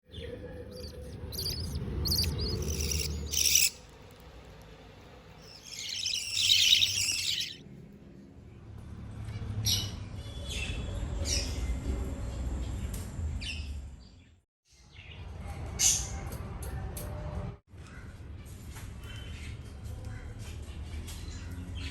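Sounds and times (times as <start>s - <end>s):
birds chirping: 0.1s - 3.8s, 5.4s - 7.6s.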